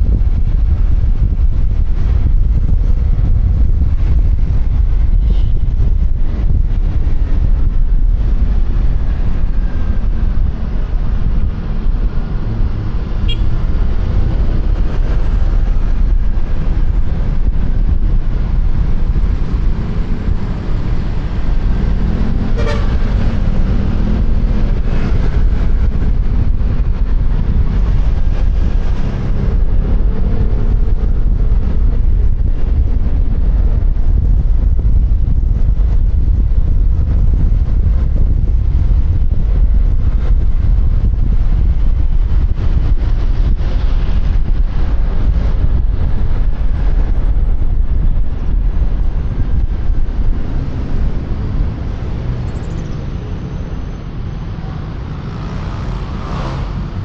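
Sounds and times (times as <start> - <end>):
traffic noise: 0.0 - 57.0
wind rumbling on microphone: 0.0 - 57.0
vehicle horn honk: 13.2 - 13.6, 22.5 - 23.0.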